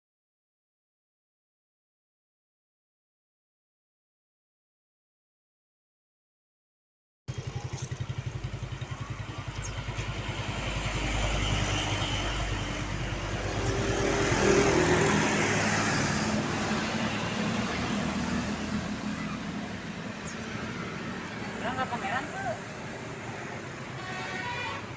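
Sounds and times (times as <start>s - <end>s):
vehicle engine passing: 7.3s - 24.9s.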